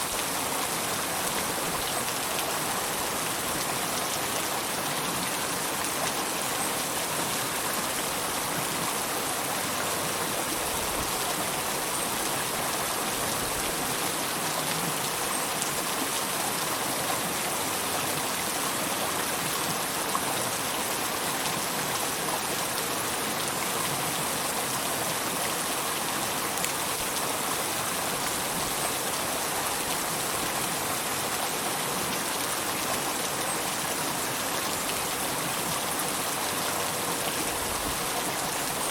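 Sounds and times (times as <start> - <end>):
river water flowing: 0.0 - 38.9.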